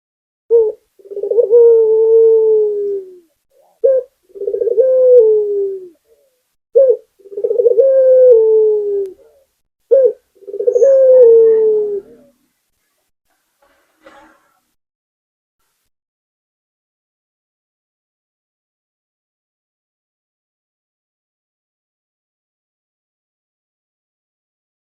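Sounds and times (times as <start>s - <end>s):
dove cooing: 0.5s - 12.4s.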